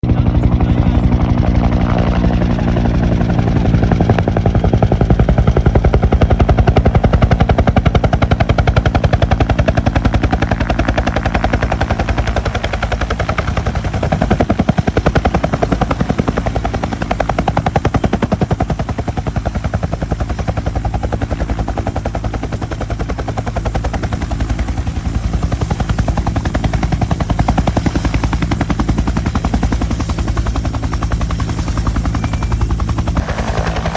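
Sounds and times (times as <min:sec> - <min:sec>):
helicopter rotor beating: 0:00.0 - 0:33.9
high turbine whine: 0:09.7 - 0:33.9.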